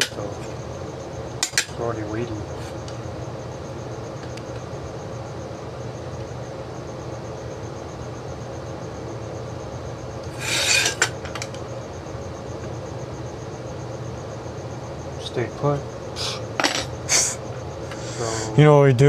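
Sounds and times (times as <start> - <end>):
low workshop hum: 0.0 - 19.0
harsh scrape: 10.3 - 11.0.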